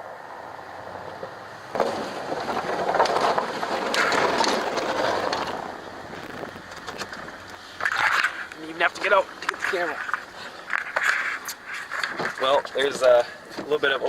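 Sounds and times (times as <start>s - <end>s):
plow blade scraping snow: 0.9s - 8.4s.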